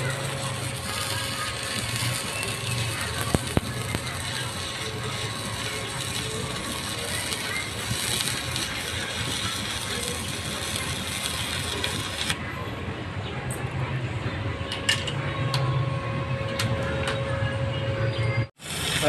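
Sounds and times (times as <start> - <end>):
hissing crackle: 0.0 - 12.4, 18.6 - 19.0
welding machine hum: 0.0 - 12.4, 18.5 - 19.0.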